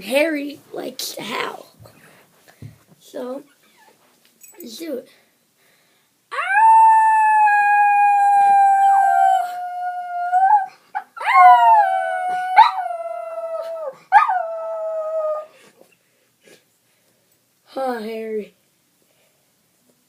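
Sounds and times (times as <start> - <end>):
dog howling: 6.3 - 15.5.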